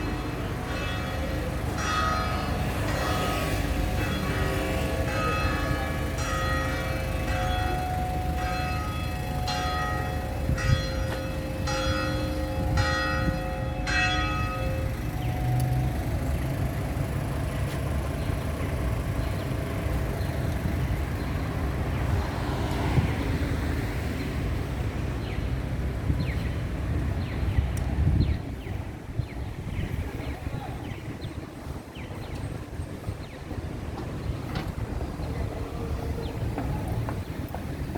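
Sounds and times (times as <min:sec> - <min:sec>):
church bells ringing: 0:00.0 - 0:20.2
city background noise: 0:00.0 - 0:37.9.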